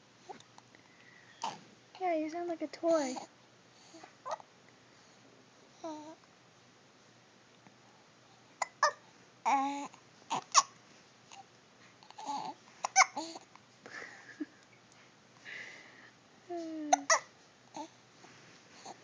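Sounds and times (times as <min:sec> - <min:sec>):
baby babbling: 0:05.8 - 0:06.2, 0:08.6 - 0:10.7, 0:12.1 - 0:13.4, 0:16.5 - 0:17.9
baby hiccupping: 0:08.6 - 0:11.4, 0:12.1 - 0:13.4, 0:16.8 - 0:17.9.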